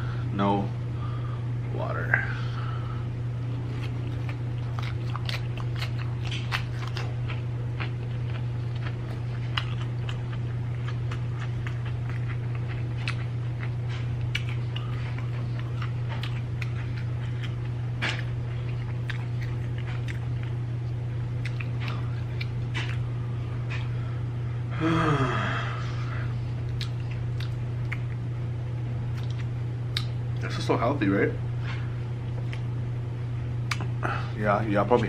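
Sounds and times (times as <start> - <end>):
steady low hum: 0.0 - 35.0
chewing crispy fried chicken: 3.3 - 24.1, 26.3 - 30.7, 31.6 - 32.8.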